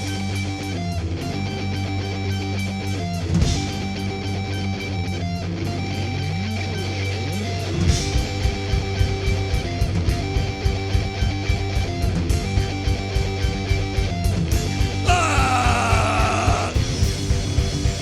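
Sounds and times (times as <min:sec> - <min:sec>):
bass guitar: 0:00.0 - 0:18.0
electric guitar playing: 0:00.1 - 0:18.0
driving low drum beat: 0:07.8 - 0:18.0.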